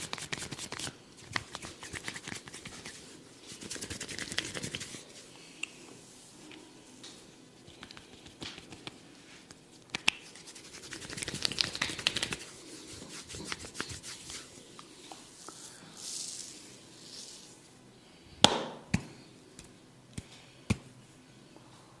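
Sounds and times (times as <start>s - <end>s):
hands rubbing hair and skin: 0.0s - 5.3s, 7.1s - 17.7s.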